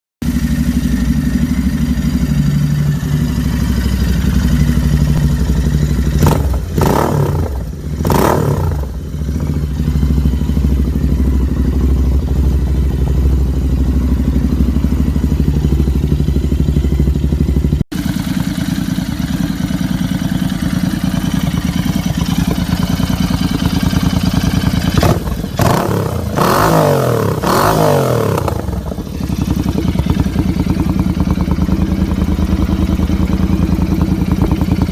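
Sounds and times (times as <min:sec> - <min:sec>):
motorcycle engine idling and revving: 0:00.2 - 0:34.9.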